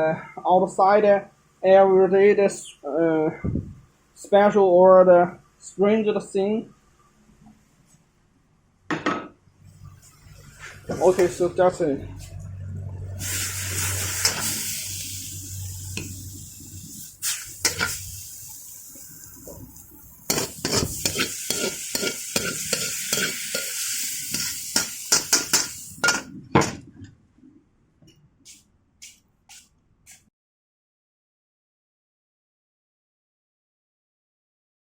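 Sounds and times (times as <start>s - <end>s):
metal spatula scraping a pan: 13.2s - 15.0s, 17.2s - 18.1s, 20.2s - 26.3s
stir-fry sizzling in a wok: 13.2s - 26.3s.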